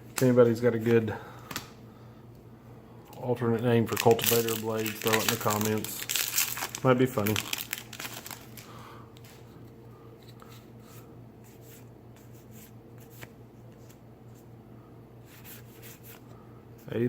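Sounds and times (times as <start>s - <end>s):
cards rustling: 3.8s - 14.5s.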